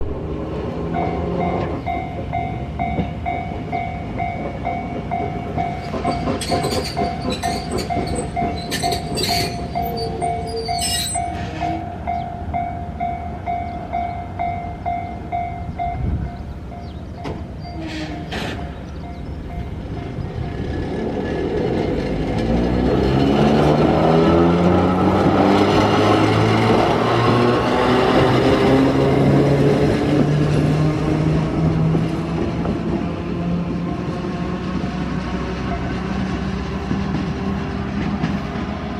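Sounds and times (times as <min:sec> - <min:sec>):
passing tram rumble: 0:00.0 - 0:38.9
wheel squeals and clicks: 0:05.8 - 0:11.8.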